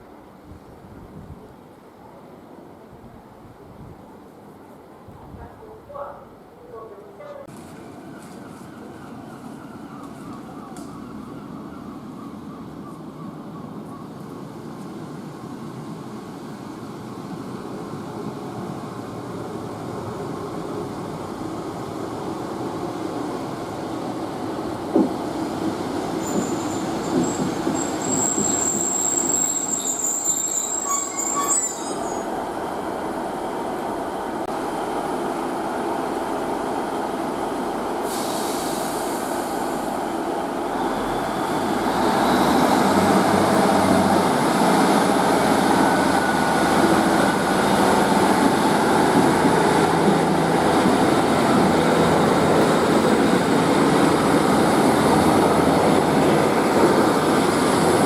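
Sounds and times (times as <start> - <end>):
diesel train running: 7.5 - 58.0
thin high squeal: 26.2 - 32.3.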